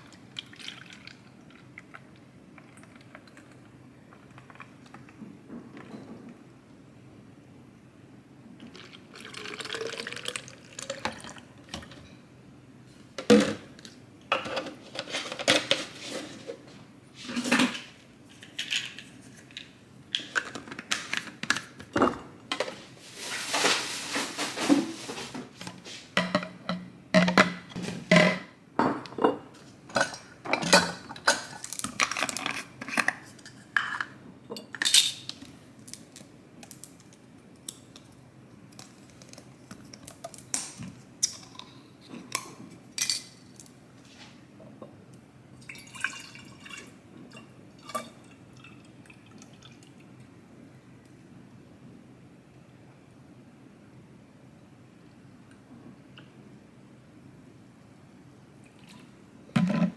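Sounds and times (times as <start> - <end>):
dishes clinking and rattling: 26.2 - 35.3.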